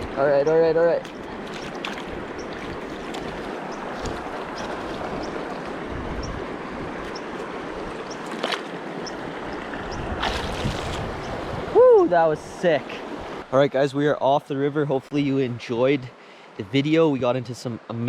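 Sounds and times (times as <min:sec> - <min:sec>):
sharp splashes or knocks: 0:01.0 - 0:05.6, 0:08.2 - 0:08.8, 0:10.1 - 0:11.2.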